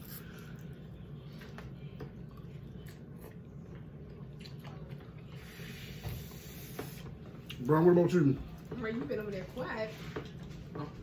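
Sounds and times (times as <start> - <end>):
people chewing noodles: 0.0 - 7.8.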